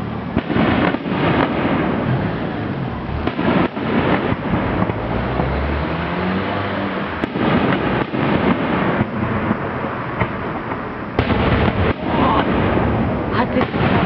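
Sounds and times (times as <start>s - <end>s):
echoing firework booms: 0.0s - 5.8s, 7.0s - 14.0s
firework bursts and crackling: 0.0s - 14.0s.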